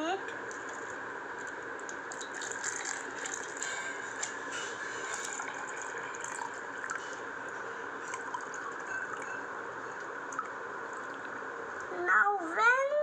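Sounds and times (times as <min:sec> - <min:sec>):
water pouring into plastic glass: 0:00.5 - 0:04.4, 0:05.0 - 0:07.0, 0:08.0 - 0:11.4.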